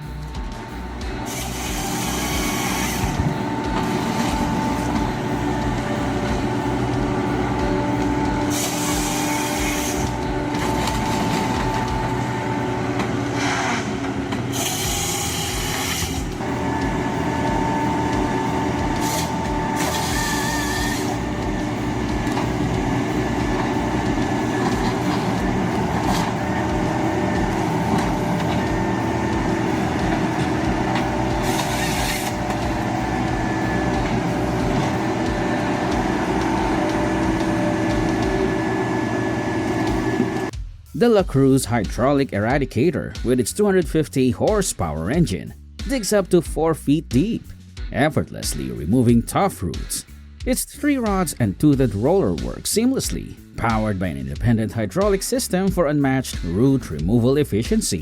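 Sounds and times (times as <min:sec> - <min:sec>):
harvester engine and hydraulics whine: 0:00.0 - 0:40.5
bursts of harsh noise: 0:00.3 - 0:40.5.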